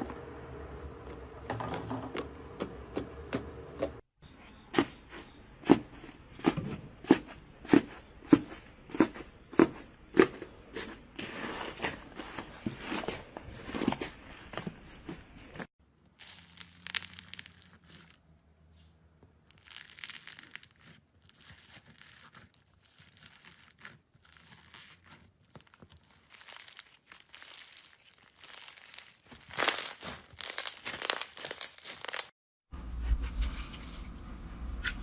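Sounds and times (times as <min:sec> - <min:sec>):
slime crinkling and crackling: 0:16.1 - 0:32.3.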